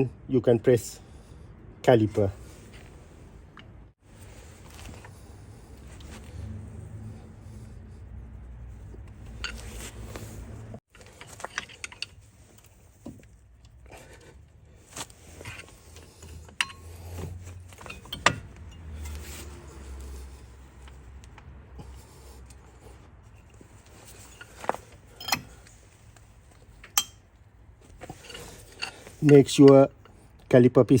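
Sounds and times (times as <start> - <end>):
screwdriver metallic clicks and scrapes: 9.0 - 14.4, 15.0 - 20.2, 23.3 - 27.3, 28.0 - 30.2.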